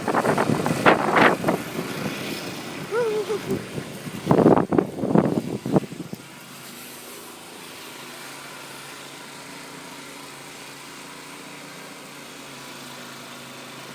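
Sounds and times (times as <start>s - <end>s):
engine running with even hum: 0.0s - 13.9s.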